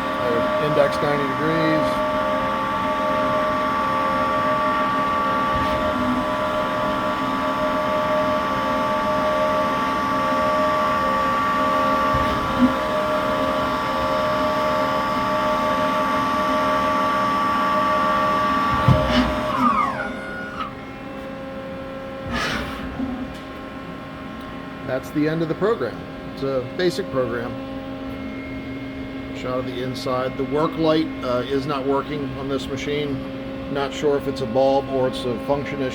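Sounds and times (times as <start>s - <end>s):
lathe drive whining: 0.0s - 21.6s.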